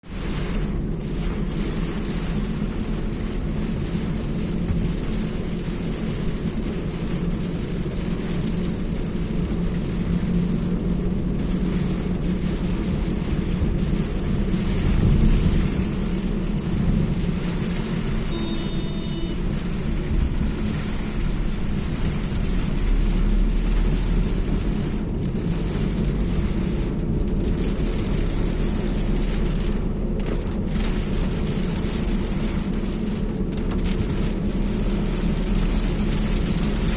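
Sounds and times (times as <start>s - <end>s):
car engine and road rumble: 0.0s - 36.9s
rain hiss: 0.1s - 36.9s
brief high tone: 18.3s - 19.4s.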